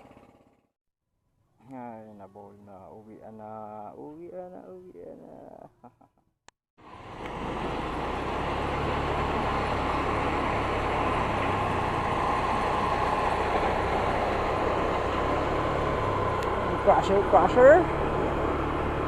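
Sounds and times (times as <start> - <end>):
motorcycle engine running: 0.0 - 0.7, 6.9 - 19.0
road and wind noise: 6.8 - 19.0.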